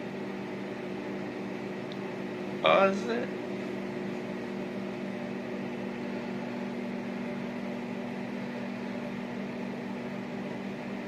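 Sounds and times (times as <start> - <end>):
microwave oven humming: 0.0 - 11.0.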